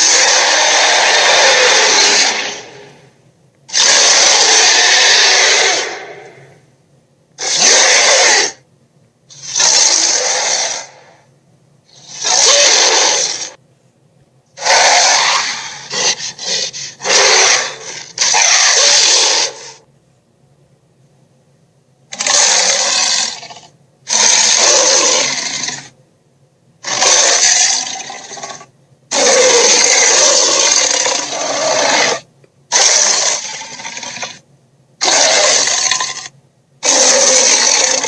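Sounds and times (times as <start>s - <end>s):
dinosaur roars: 0.0s - 3.1s, 3.7s - 6.6s, 7.4s - 8.6s, 9.3s - 11.2s, 11.9s - 13.6s, 14.6s - 19.8s, 22.2s - 25.9s, 26.8s - 34.4s, 35.0s - 38.0s.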